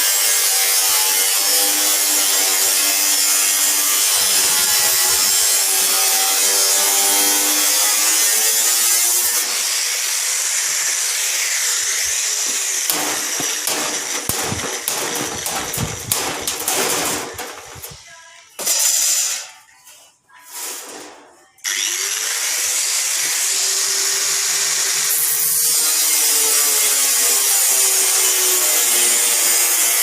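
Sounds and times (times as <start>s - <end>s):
rapid scraping and clattering: 12.5s - 18.0s.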